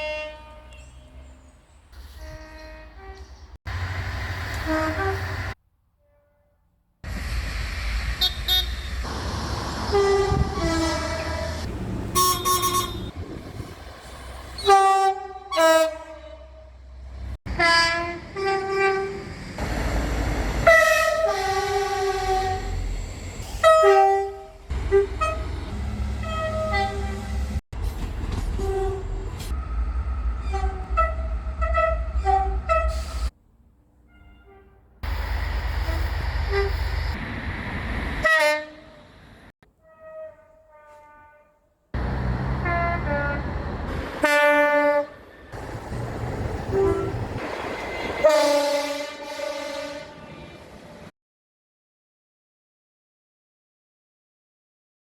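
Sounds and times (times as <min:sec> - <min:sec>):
train two-tone horn blasts: 0:00.0 - 0:01.1, 0:02.1 - 0:03.4, 0:04.5 - 0:06.6, 0:09.9 - 0:13.4, 0:14.6 - 0:16.8, 0:17.5 - 0:19.2, 0:20.6 - 0:22.8, 0:23.6 - 0:25.6, 0:26.2 - 0:27.6, 0:28.6 - 0:33.3, 0:34.1 - 0:35.2, 0:35.8 - 0:37.0, 0:38.2 - 0:39.0, 0:39.8 - 0:41.6, 0:42.4 - 0:43.6, 0:44.2 - 0:45.2, 0:46.7 - 0:51.1
rumble of moving trains: 0:00.0 - 0:51.1.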